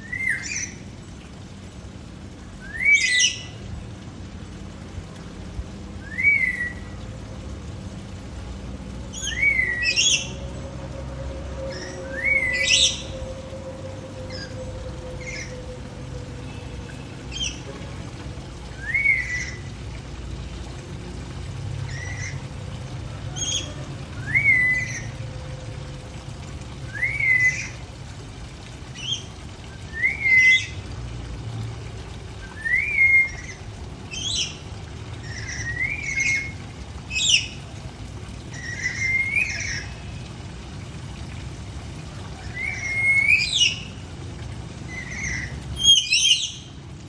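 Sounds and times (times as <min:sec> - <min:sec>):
parrot whistled call: 0:02.6 - 0:03.5, 0:09.1 - 0:10.4, 0:11.6 - 0:15.7, 0:42.4 - 0:43.9, 0:44.9 - 0:46.6.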